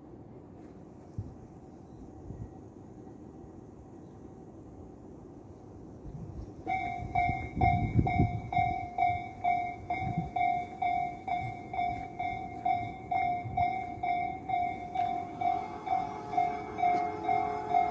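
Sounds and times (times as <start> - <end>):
level-crossing alarm bell ringing: 6.7 - 17.9.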